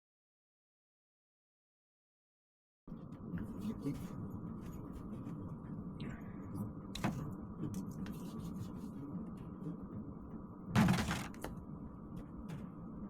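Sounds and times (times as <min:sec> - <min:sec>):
steady low hum: 0:02.9 - 0:13.0
knock: 0:10.8 - 0:11.5.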